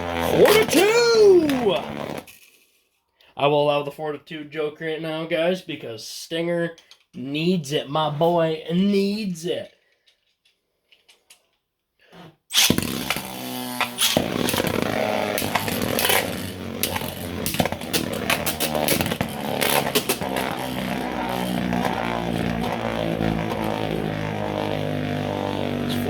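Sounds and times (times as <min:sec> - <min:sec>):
spinning tops whirring: 0:00.2 - 0:02.3, 0:12.5 - 0:26.0.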